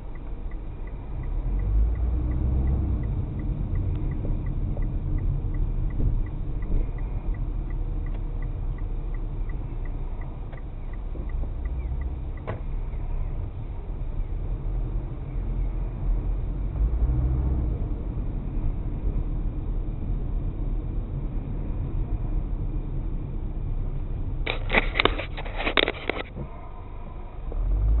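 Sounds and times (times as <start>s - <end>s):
car engine and road noise: 0.0s - 28.0s
sharp clicks and rattles: 24.4s - 26.4s.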